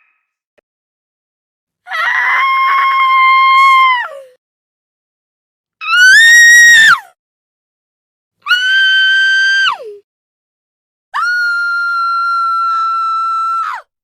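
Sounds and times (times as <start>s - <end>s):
woman screaming: 5.8s - 7.0s.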